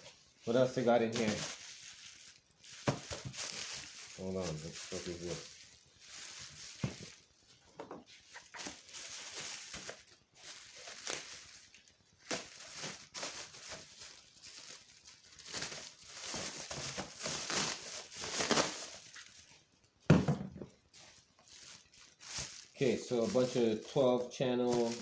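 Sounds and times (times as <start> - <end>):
plastic packaging crinkling: 0.0 - 25.0.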